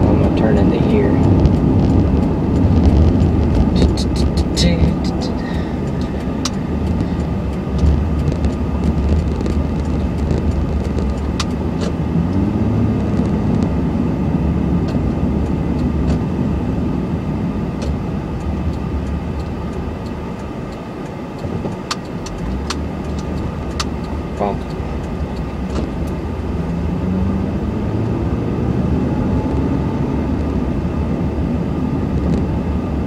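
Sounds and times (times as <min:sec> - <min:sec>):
scattered clicks and knocks: 0:00.0 - 0:13.8, 0:17.8 - 0:26.2
road noise: 0:00.0 - 0:33.0
truck engine rumbling: 0:00.0 - 0:33.0.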